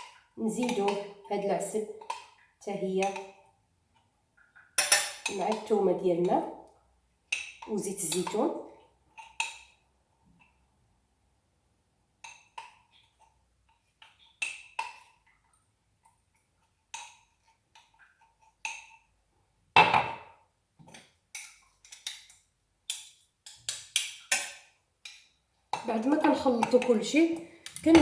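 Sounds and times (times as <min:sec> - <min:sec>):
spoon clinking glassware: 0:04.8 - 0:05.4.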